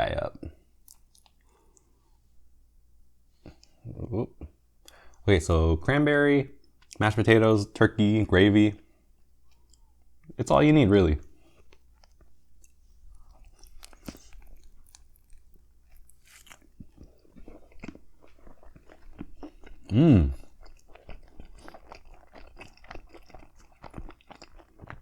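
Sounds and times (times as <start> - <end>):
person humming: 3.9 - 4.5, 19.9 - 20.4
biting and chewing bread: 11.6 - 25.0.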